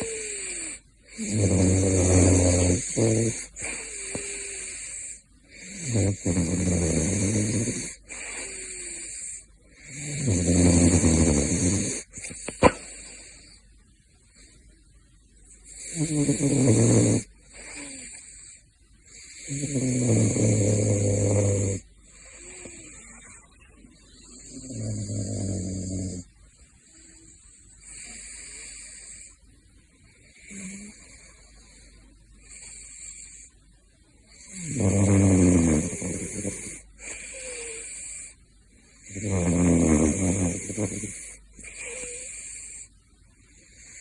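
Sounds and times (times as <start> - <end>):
soft breath: 0.0 - 1.3, 2.8 - 5.8, 11.9 - 15.8, 17.3 - 19.7, 21.7 - 24.7, 26.2 - 34.6, 35.9 - 39.0
animal snoring: 0.0 - 13.5, 15.5 - 26.3, 26.9 - 29.4, 30.2 - 33.6, 34.3 - 38.4, 39.0 - 43.0, 43.6 - 44.0.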